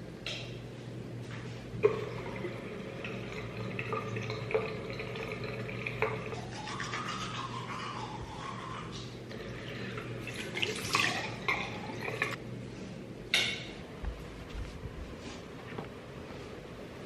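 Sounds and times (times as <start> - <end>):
water running in sink: 1.8 - 8.1, 9.3 - 12.4.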